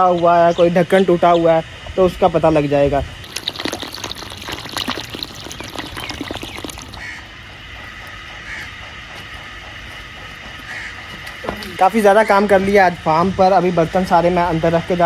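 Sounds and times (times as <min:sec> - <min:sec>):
water pouring and splashing: 0:03.0 - 0:07.3.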